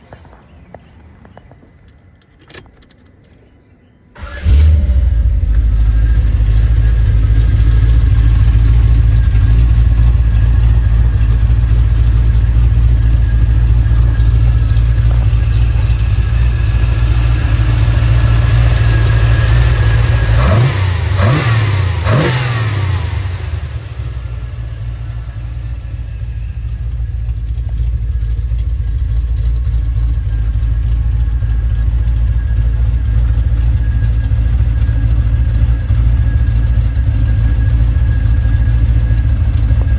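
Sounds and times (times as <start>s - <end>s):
car engine starting and idling: 4.1s - 39.9s
engine revving: 4.2s - 26.7s.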